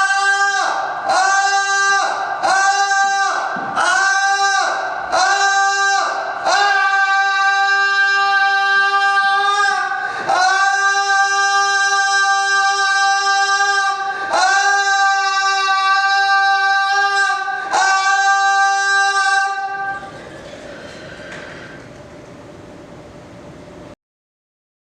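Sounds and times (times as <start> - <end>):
person shouting a high note: 0.0 - 20.2.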